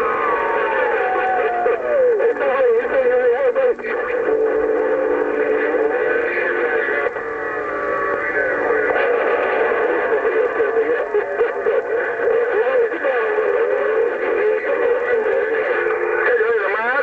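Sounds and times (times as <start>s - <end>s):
warbling radio whistle tones: 0.0s - 3.0s
garbled radio signals: 0.0s - 17.0s.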